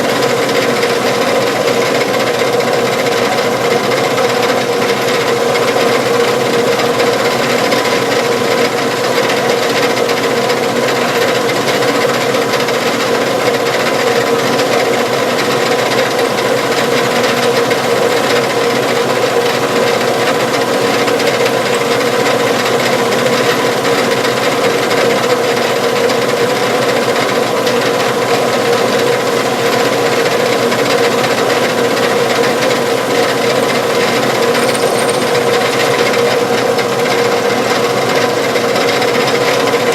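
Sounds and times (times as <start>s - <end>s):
drill boring through metal: 33.5s - 37.6s.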